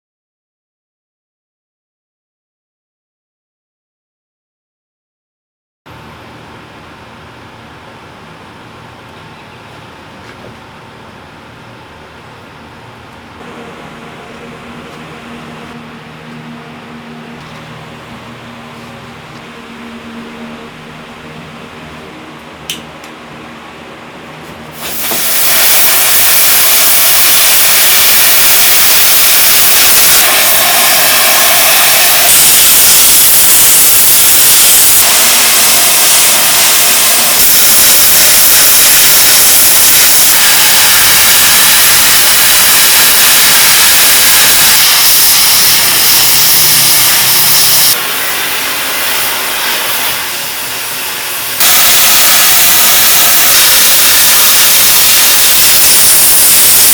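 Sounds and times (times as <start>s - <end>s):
loud even hiss: 24.7s - 56.9s.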